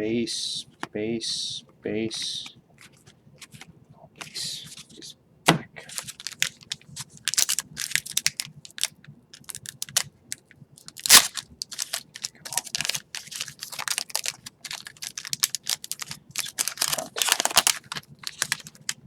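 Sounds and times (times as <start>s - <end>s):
trading cards rustling: 2.3s - 5.1s, 5.8s - 19.0s
card snapping: 10.8s - 19.0s.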